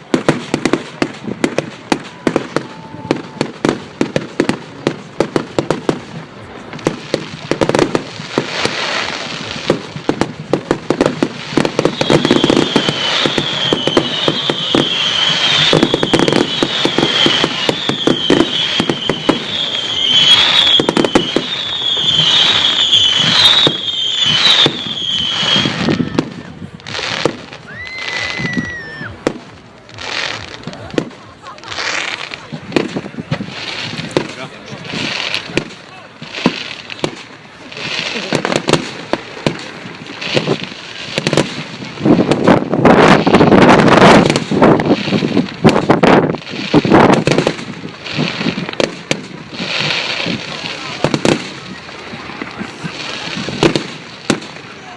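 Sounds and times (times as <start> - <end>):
fireworks banging and crackling: 0.0 - 54.9
high wavering firework whistle: 1.8 - 4.6, 6.8 - 31.1.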